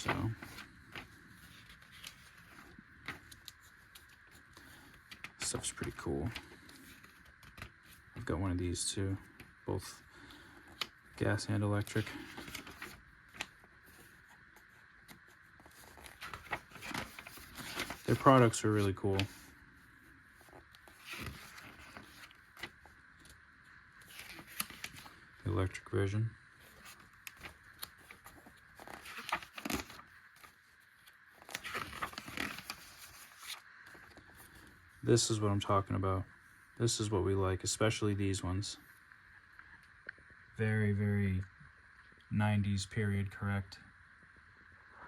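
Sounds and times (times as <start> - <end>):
paper pages rustling: 0.0 - 8.3, 9.1 - 25.4, 26.6 - 34.8.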